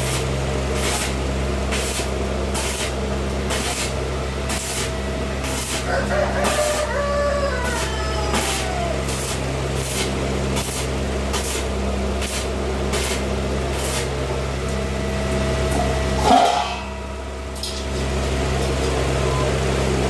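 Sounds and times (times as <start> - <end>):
welding hiss: 0.0 - 6.9, 7.6 - 14.2
welding machine mains hum: 0.0 - 20.0.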